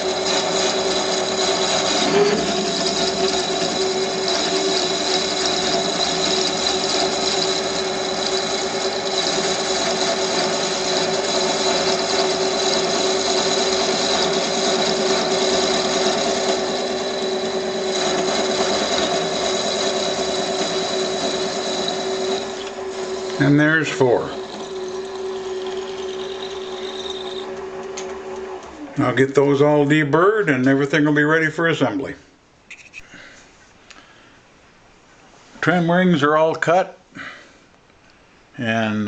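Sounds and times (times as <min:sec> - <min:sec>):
lathe whining: 0:00.0 - 0:28.9.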